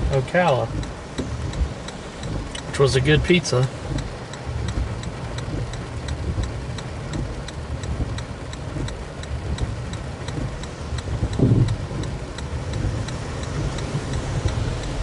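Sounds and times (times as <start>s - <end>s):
car turn signal ticking: 0.0s - 15.0s
engine and road rumble: 0.0s - 15.0s.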